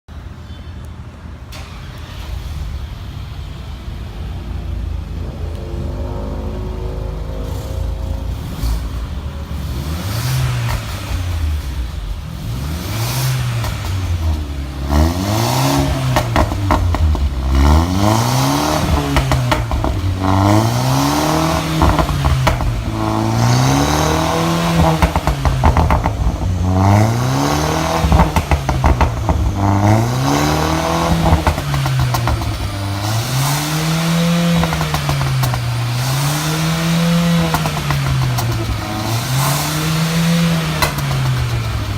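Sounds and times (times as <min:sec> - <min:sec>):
car engine revving: 0:01.6 - 0:41.9
exhaust pops and crackles: 0:10.5 - 0:12.3, 0:13.3 - 0:41.9.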